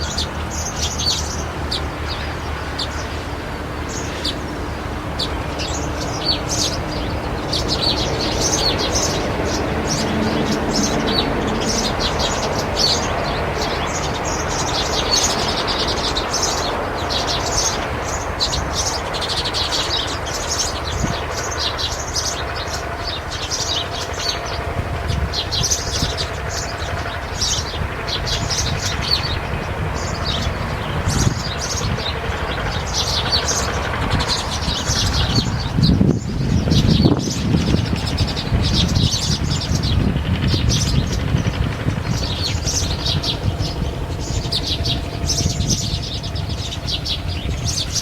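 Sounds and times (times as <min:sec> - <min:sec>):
birds chirping: 0:00.0 - 0:48.0
steady background noise: 0:00.0 - 0:48.0.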